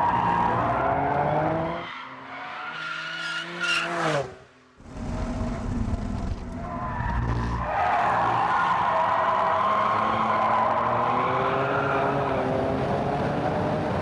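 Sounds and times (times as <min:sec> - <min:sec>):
sports car engine at speed: 0:03.8 - 0:14.0.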